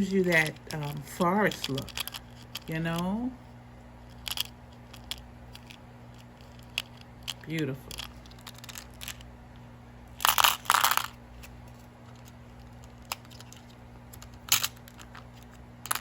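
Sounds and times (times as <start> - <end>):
stone beads clicking and rattling: 0.0 - 3.2, 4.1 - 9.2, 10.2 - 11.2, 12.2 - 16.0.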